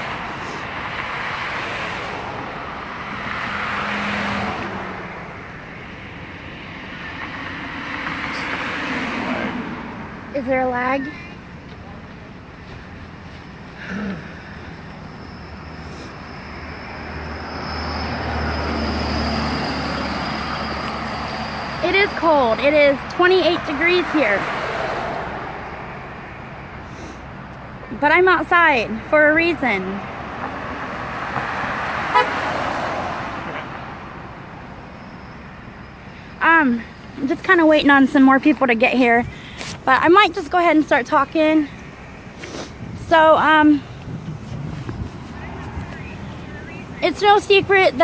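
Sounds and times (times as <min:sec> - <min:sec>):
car passing: 0:00.0 - 0:48.0
vehicle engine hum and tyre noise: 0:00.0 - 0:48.0
car horn toot: 0:32.1 - 0:32.5.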